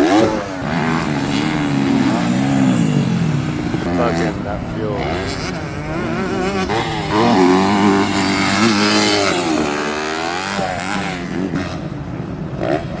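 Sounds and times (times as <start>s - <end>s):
motocross bike engines revving: 0.0s - 13.0s.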